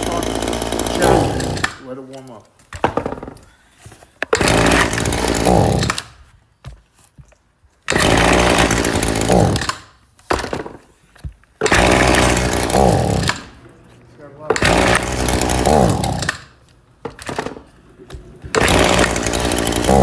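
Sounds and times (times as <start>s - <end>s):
small two-stroke engine revving: 0.0s - 1.8s, 4.3s - 6.1s, 7.9s - 9.8s, 11.6s - 20.0s.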